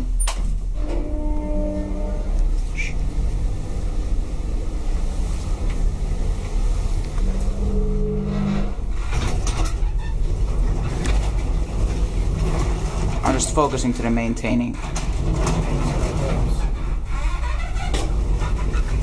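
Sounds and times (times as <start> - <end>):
lift car rumbling: 0.0 - 19.0
short hum: 0.8 - 9.1.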